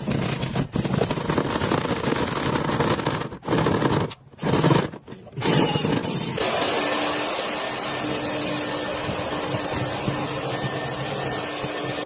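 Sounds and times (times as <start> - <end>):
rattling and scraping in duct: 0.0 - 6.4.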